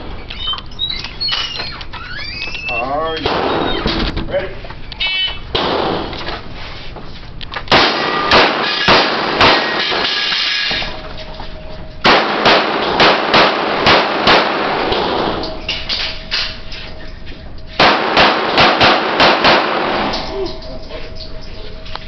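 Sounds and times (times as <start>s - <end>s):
handgun shots echoing: 7.7s - 10.9s, 12.0s - 16.0s, 17.8s - 20.6s.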